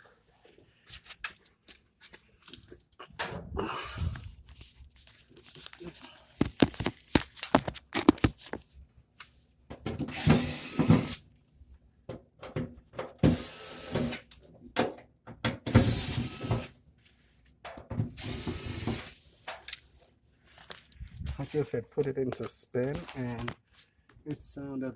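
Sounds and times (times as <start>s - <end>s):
cordless drill running: 10.1s - 11.2s, 13.2s - 14.2s, 15.8s - 16.7s, 18.2s - 19.2s.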